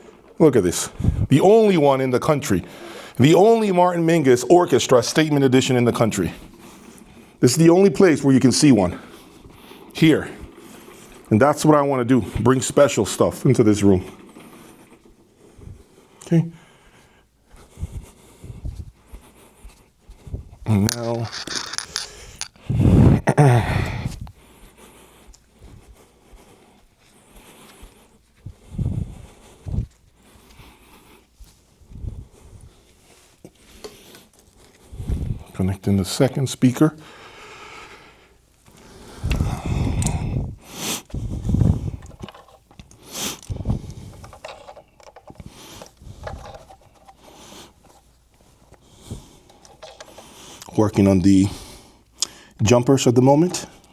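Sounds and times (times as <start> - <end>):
faint handling noises: 0.0 - 22.8, 24.0 - 36.9, 37.5 - 53.9
hands handling speaker cables: 18.7 - 22.7, 38.5 - 53.9
man breathing out heavily: 22.0 - 24.4.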